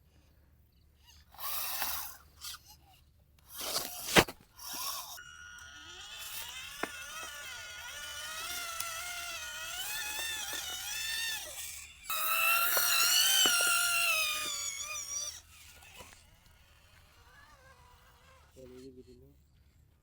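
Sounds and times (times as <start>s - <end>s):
toy vehicle motor whining: 1.0s - 20.0s
clicks: 5.6s - 17.1s.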